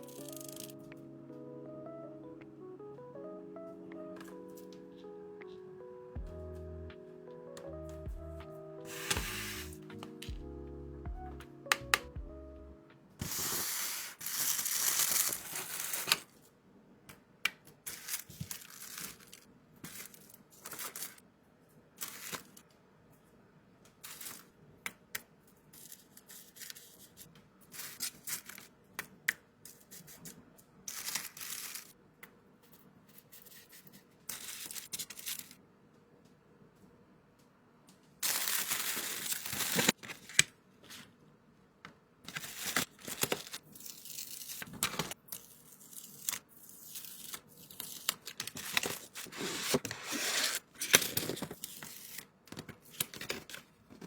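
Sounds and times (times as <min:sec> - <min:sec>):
plastic packaging crinkling: 0:00.0 - 0:00.8, 0:13.3 - 0:16.4, 0:17.9 - 0:21.2, 0:38.2 - 0:40.5, 0:42.3 - 0:53.7.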